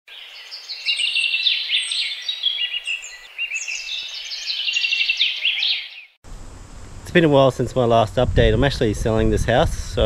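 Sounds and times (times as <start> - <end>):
small birds chirping: 0.1 - 6.2.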